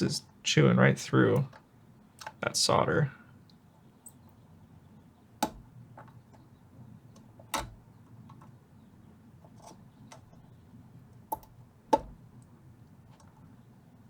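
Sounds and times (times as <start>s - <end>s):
faint low hum: 0.0s - 14.0s
soldering tools tapping metal: 5.4s - 5.7s.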